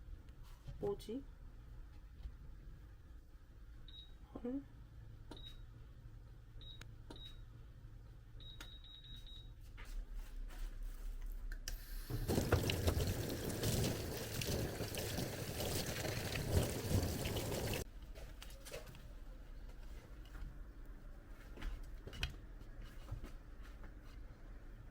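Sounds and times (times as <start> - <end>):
water pouring: 11.8 - 17.8.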